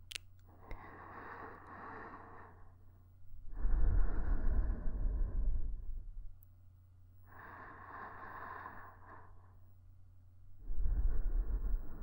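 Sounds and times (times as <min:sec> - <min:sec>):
woman breathing slowly: 0:00.5 - 0:06.2, 0:07.2 - 0:09.8, 0:10.6 - 0:12.0
low rumble: 0:03.4 - 0:06.4, 0:10.5 - 0:12.0.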